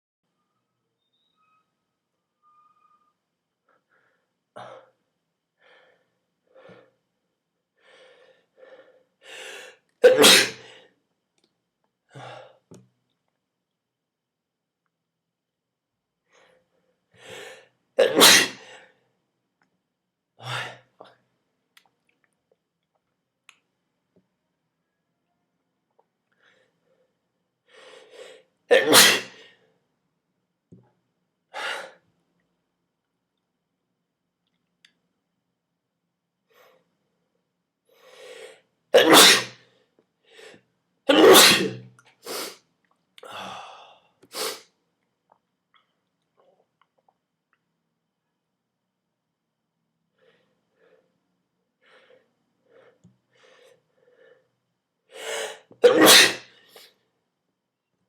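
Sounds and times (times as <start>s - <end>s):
person sneezing: 10.0s - 10.8s, 17.3s - 18.8s, 28.7s - 29.4s, 39.0s - 39.6s, 41.1s - 42.6s, 44.3s - 44.6s, 55.2s - 56.8s.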